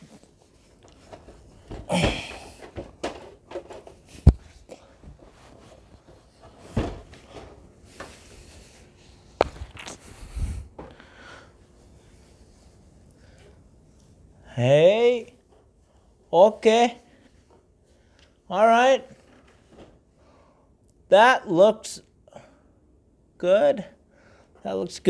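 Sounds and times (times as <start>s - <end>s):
scraping and rustling: 0.0s - 11.0s
soft thuds: 1.0s - 11.4s.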